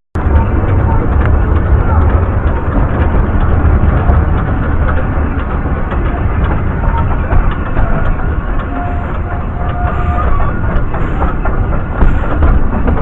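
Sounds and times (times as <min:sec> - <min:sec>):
train running: 0:00.2 - 0:13.0.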